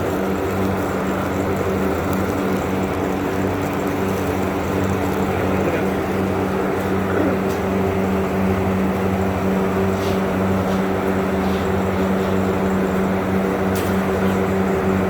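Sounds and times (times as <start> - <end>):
motor humming: 0.0 - 8.2.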